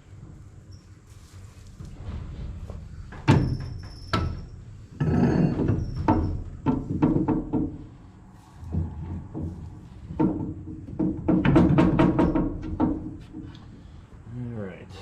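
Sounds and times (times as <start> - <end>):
metal scraping: 1.2 - 6.6.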